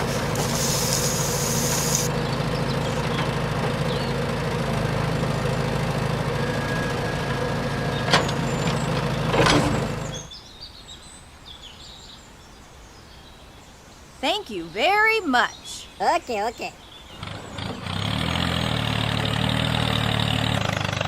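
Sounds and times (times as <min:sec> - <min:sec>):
motor humming: 0:00.0 - 0:04.3.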